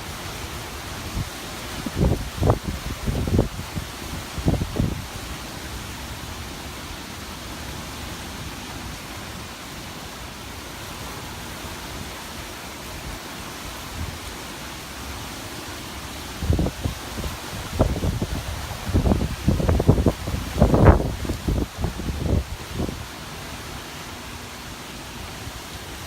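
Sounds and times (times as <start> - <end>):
hurricane wind rushing: 0.0 - 26.0
wind buffeting microphone: 1.1 - 5.2, 16.3 - 23.1.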